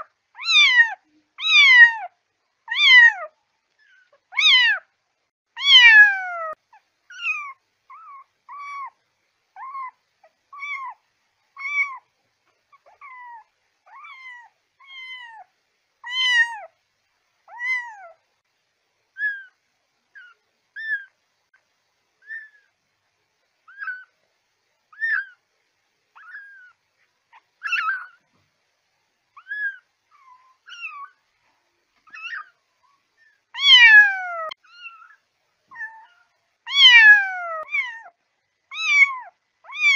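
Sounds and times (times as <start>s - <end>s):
kitten mewing: 33.6s - 38.1s.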